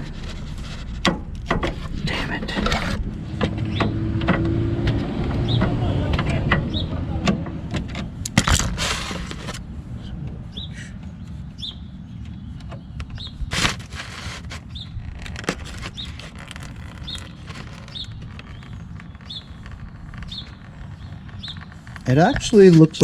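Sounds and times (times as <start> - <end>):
bird chirping: 0.0 - 8.2, 10.0 - 23.0
low background rumble: 0.0 - 23.0
handling knocks and clatters: 7.3 - 9.6.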